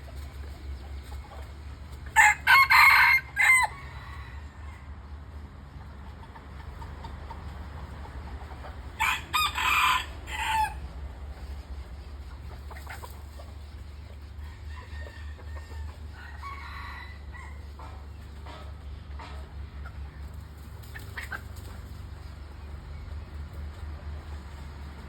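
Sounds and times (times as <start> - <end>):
rooster crowing: 2.2 - 4.9, 9.0 - 10.8, 14.5 - 17.7.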